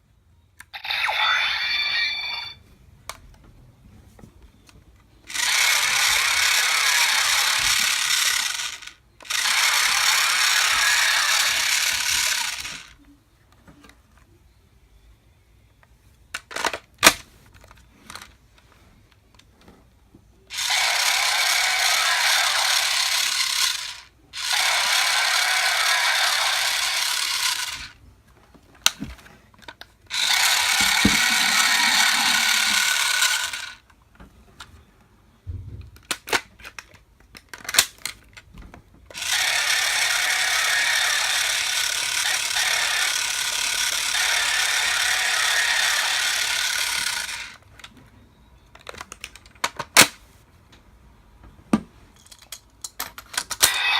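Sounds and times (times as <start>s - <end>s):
toy drill rattling whir: 0.8s - 2.6s, 5.3s - 13.0s, 20.5s - 28.0s, 30.1s - 33.9s, 39.1s - 47.6s, 53.5s - 53.9s
clicks of toy being handled: 15.8s - 18.4s, 36.0s - 38.5s, 48.7s - 50.2s, 52.2s - 53.9s.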